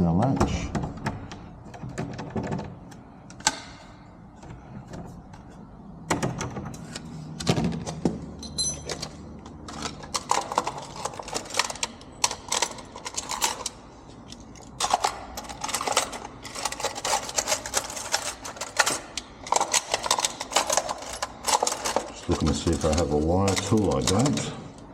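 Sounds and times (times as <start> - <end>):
metal tools clicking and rattling: 8.4 - 24.9.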